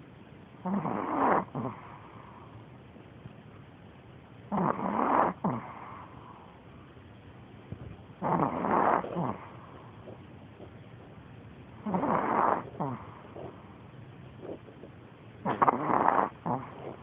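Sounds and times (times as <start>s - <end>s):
dog snoring: 0.6s - 2.6s, 4.5s - 6.6s, 8.1s - 17.0s.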